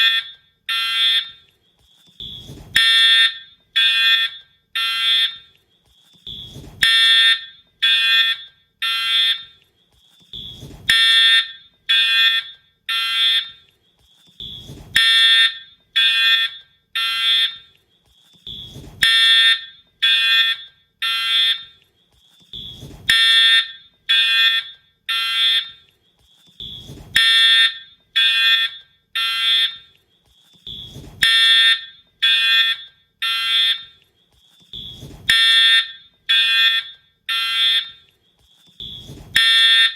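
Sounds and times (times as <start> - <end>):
shrill fire alarm horn blasts: 0.0 - 1.3, 2.2 - 5.4, 6.3 - 9.5, 10.4 - 13.5, 14.4 - 17.6, 18.5 - 21.7, 22.6 - 25.8, 26.6 - 29.9, 30.7 - 33.9, 34.8 - 38.0, 38.8 - 39.9.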